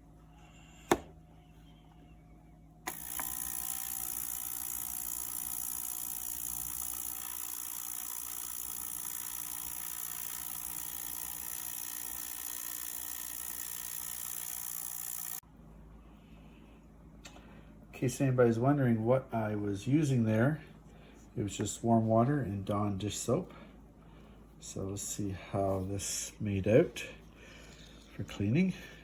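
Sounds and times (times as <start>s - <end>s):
ultrasonic cleaner buzzing hiss: 2.9s - 15.4s.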